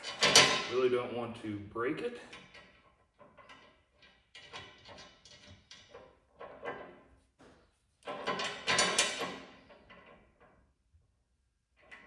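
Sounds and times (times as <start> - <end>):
sliding metal rattle: 0.0 - 0.9, 2.3 - 7.1, 8.0 - 10.6.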